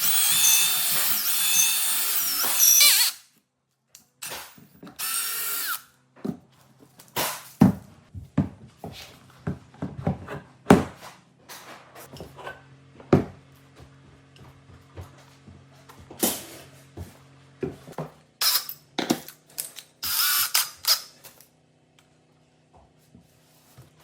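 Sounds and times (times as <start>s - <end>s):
power drill running: 0.0s - 3.2s, 4.2s - 5.9s, 18.4s - 18.8s, 20.0s - 21.1s.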